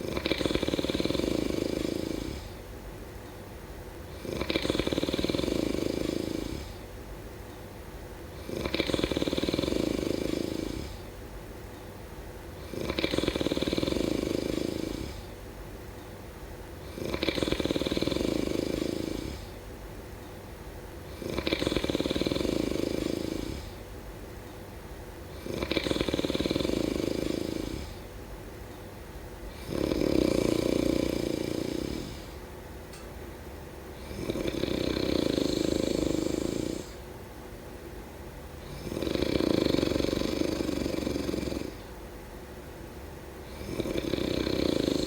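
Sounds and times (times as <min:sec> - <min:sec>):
person snoring: 0:00.0 - 0:02.6, 0:04.1 - 0:06.8, 0:08.4 - 0:11.1, 0:12.6 - 0:15.3, 0:16.8 - 0:19.6, 0:21.1 - 0:23.8, 0:25.3 - 0:28.0, 0:29.5 - 0:32.4, 0:34.0 - 0:37.0, 0:38.6 - 0:41.9, 0:43.5 - 0:45.0.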